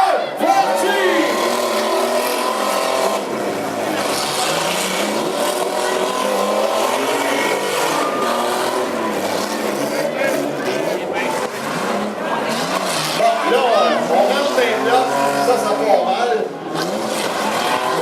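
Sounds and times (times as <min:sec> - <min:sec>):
crowd noise: 0:00.0 - 0:18.0
pickup truck engines revving: 0:00.0 - 0:18.0.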